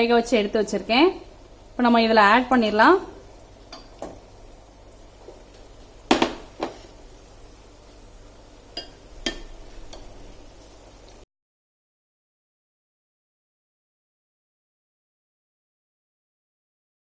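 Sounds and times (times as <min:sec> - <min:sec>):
utensil knocking on metal pots: 0:06.1 - 0:06.9, 0:08.8 - 0:10.1.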